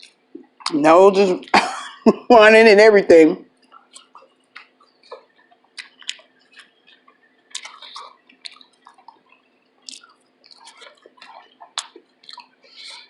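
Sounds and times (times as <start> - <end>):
person chewing food: 0.0 - 0.8, 3.5 - 13.0.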